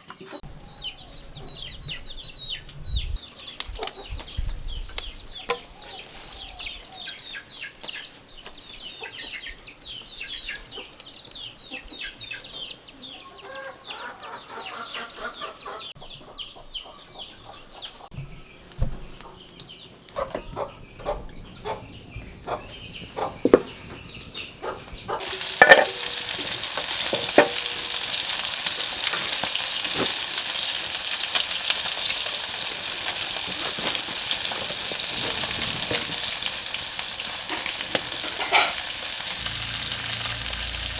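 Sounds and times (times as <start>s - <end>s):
chickens chirping: 0.0s - 18.4s, 19.2s - 40.9s
cookware clattering: 25.2s - 28.4s, 37.6s - 40.0s
food sizzling in hot oil: 25.2s - 40.9s.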